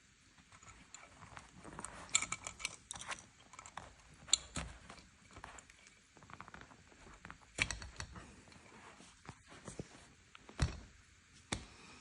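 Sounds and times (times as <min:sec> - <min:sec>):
cable plugs clicking and rattling: 0:00.4 - 0:08.6.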